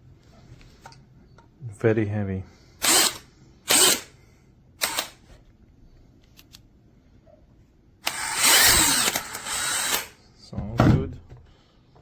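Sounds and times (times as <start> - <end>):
cordless drill spinning: 2.8 - 4.1, 4.8 - 5.2, 8.0 - 10.2.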